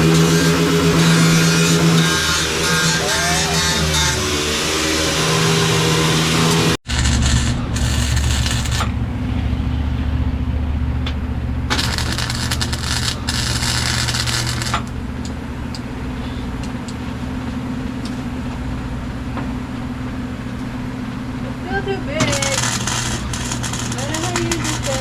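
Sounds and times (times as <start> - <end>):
harsh scraping noise: 0.0 - 10.4
low machine hum: 0.0 - 25.0.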